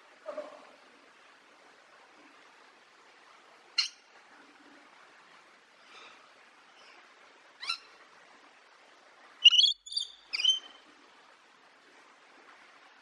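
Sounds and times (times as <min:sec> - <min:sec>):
parrot squawking: 0:09.4 - 0:10.7.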